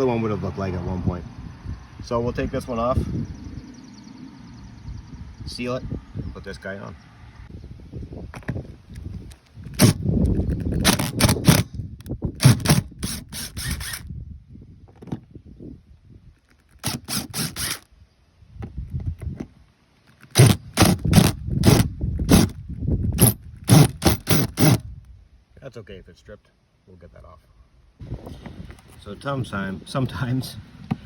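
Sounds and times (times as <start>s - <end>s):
screwdriver scraping screws: 9.0s - 14.1s, 16.4s - 17.9s, 20.0s - 24.9s.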